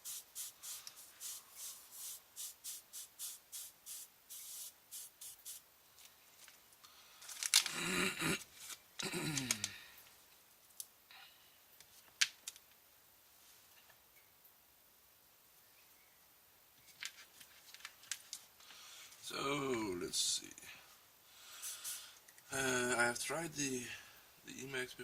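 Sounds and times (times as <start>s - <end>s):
rhythmic scraping strokes: 0.0s - 5.6s.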